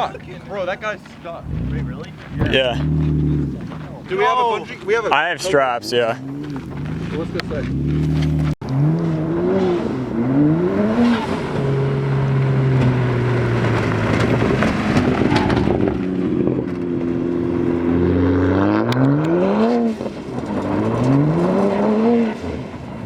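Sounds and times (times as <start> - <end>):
car engine revving: 0.0 - 23.0.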